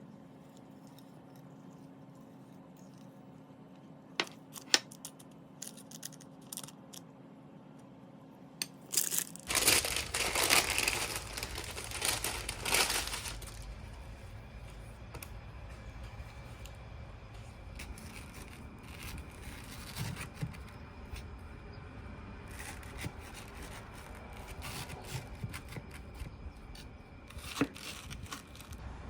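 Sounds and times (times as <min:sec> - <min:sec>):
chocolate bar crunching: 0:08.9 - 0:14.1, 0:22.5 - 0:28.8.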